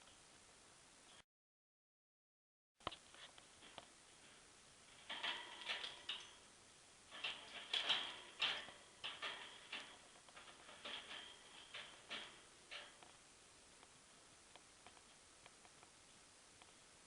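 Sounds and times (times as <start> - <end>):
budgie claws and beak clicking on cage: 5.0 - 6.4, 7.1 - 13.2.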